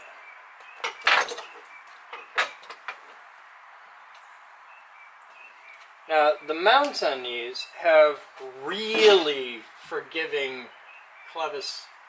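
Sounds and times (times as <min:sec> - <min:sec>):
low steady hiss: 0:00.0 - 0:12.0
tools clattering: 0:00.8 - 0:03.2, 0:08.9 - 0:09.4.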